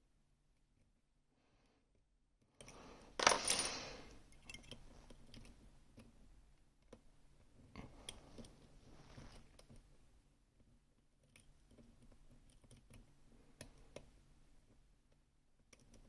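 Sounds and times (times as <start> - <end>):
metal object clattering: 3.2 - 3.9.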